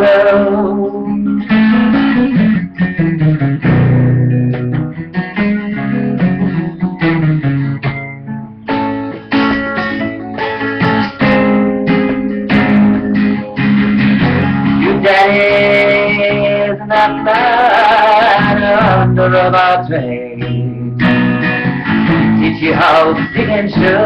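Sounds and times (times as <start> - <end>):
low bass notes: 0.0 - 8.7, 10.7 - 24.0
guitar picking and strumming: 0.0 - 24.0.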